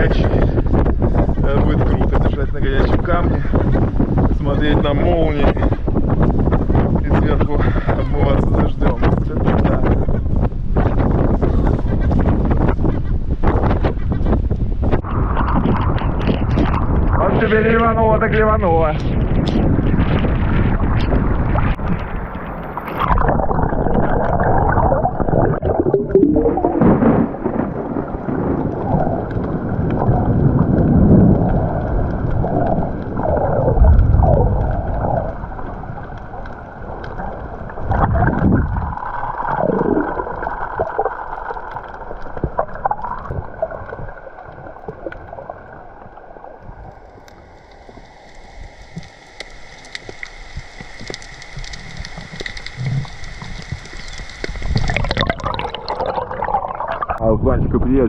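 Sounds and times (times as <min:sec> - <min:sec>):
wind buffeting microphone: 0:00.0 - 0:41.1
heavy rain: 0:26.0 - 0:56.5.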